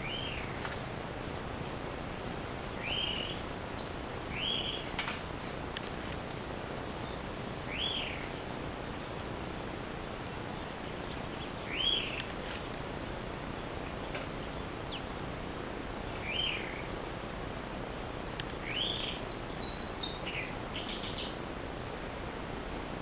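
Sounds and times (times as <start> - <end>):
bird chirping: 0.0 - 0.7, 2.7 - 5.6, 6.8 - 8.5, 10.0 - 12.4, 13.5 - 15.1, 16.2 - 16.9, 18.6 - 21.4
steady background hiss: 0.0 - 23.0.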